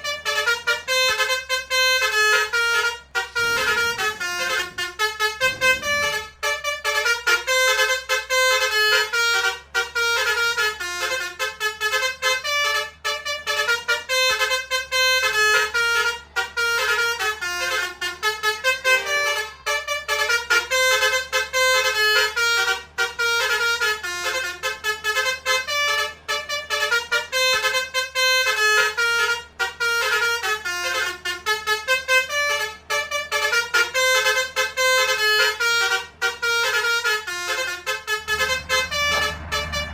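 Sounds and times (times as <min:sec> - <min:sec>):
musical bus horn melody: 0:00.0 - 0:39.9.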